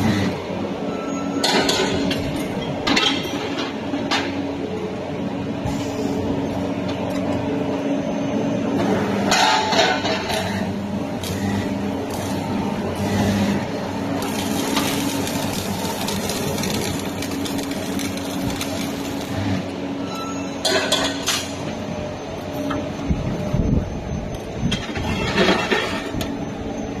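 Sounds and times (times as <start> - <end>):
welding machine electrical hum: 0.0 - 27.0
bursts of welding noise: 9.2 - 21.6.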